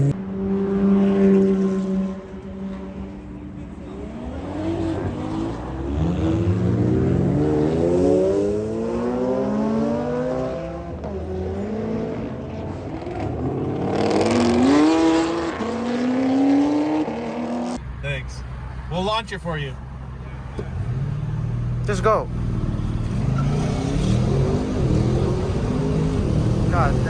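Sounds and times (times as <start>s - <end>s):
car engine accelerating hard: 22.4s - 27.0s.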